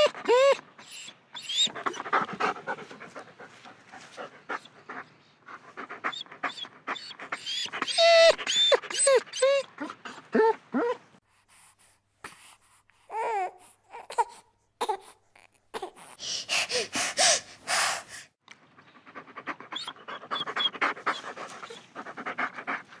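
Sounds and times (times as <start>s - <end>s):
dog whimpering: 0.0s - 2.4s, 6.0s - 11.1s, 19.7s - 22.4s
dog panting: 0.0s - 11.0s, 16.2s - 23.0s.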